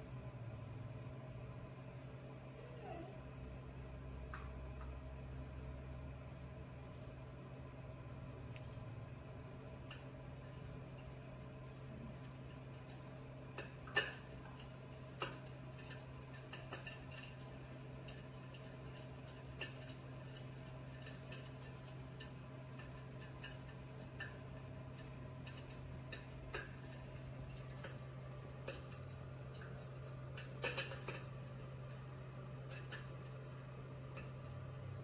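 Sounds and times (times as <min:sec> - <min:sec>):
simulated fire crackling: 0:09.1 - 0:35.0.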